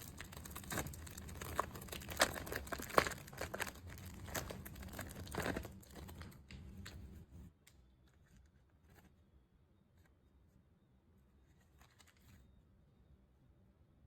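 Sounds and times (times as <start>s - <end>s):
plastic wrapper crinkling: 0.0s - 7.0s.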